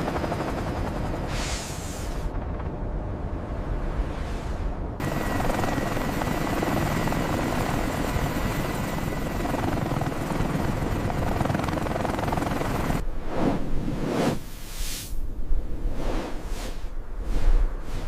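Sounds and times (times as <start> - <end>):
helicopter rotor and turbine: 0.0 - 4.0, 5.0 - 14.8.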